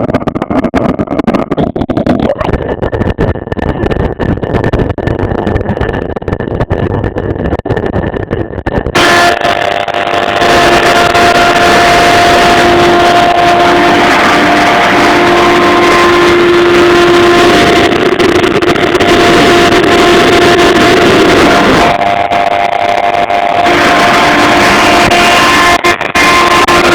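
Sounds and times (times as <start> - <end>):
dense machining noise: 9.0 - 26.9
router spindle whine: 9.0 - 26.9.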